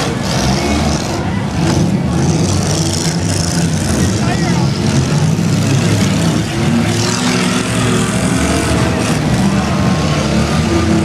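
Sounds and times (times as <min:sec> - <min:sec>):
car engines revving: 0:00.0 - 0:11.0.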